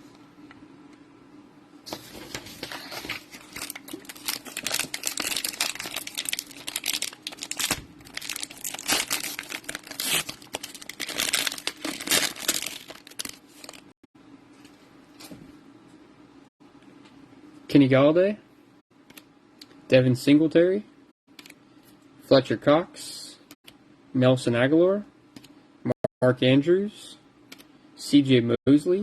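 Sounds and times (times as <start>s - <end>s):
plastic wrapper tearing and crinkling: 2.6s - 13.9s.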